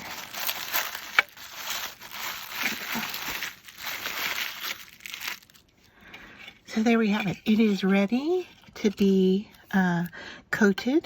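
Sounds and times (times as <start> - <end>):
plastic wrap crinkling: 0.0 - 6.1.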